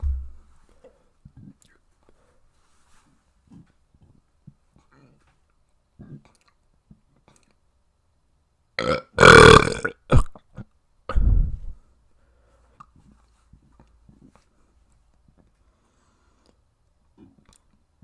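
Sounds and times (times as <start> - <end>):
person burping: 8.8 - 11.3.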